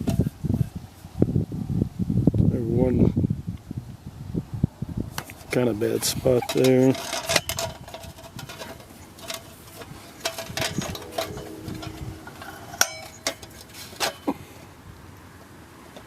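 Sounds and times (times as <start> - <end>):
gas lantern metal clicks and clinks: 6.0 - 14.4.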